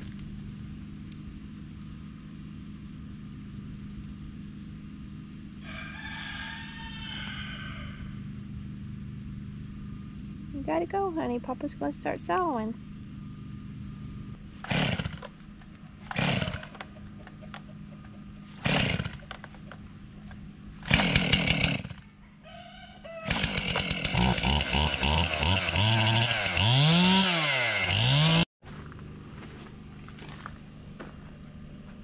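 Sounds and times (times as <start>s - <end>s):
chainsaw engine running and revving: 14.5s - 17.4s, 18.4s - 19.5s, 20.8s - 22.1s, 23.2s - 29.5s
chainsaw starter cord pulls: 14.6s - 17.4s, 18.5s - 22.0s, 23.3s - 28.4s.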